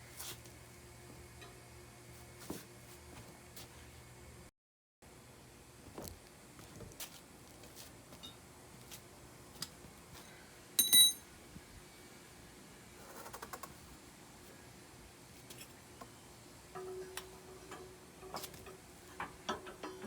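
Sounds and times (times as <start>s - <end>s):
loud ringing metal clank: 10.8s - 11.2s.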